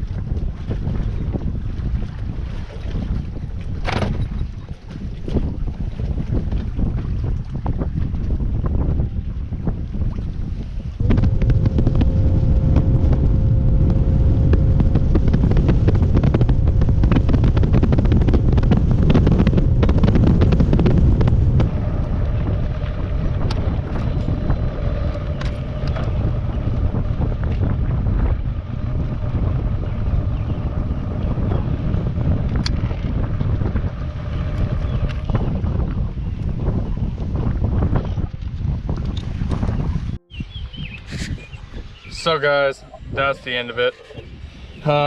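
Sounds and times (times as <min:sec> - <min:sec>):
wind buffeting microphone: 0:00.0 - 0:45.0
engine running: 0:11.0 - 0:40.3.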